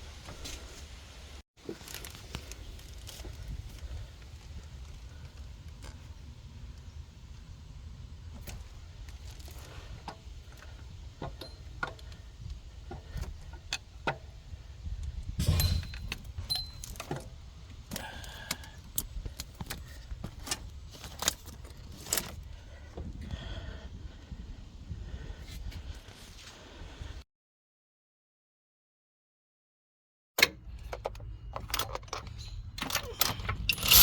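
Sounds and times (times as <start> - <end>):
metal tools clinking and clanking: 11.2 - 12.2, 15.4 - 22.4, 31.0 - 34.0.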